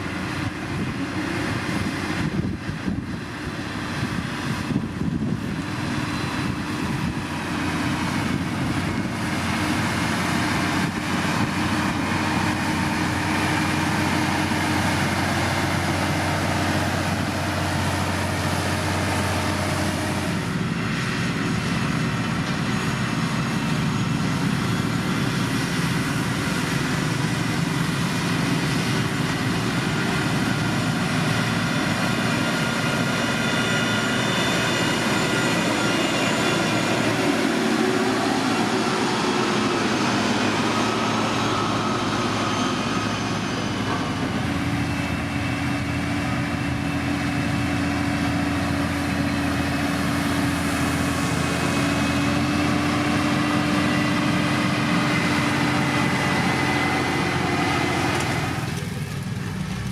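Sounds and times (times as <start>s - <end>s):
heavy diesel machinery engine: 0.0s - 59.9s.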